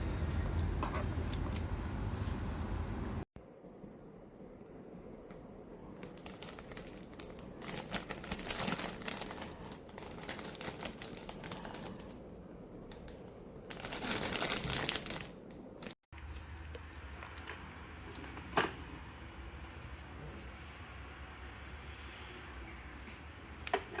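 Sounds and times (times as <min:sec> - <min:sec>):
packaging crinkling: 0:05.9 - 0:12.2, 0:13.0 - 0:16.0.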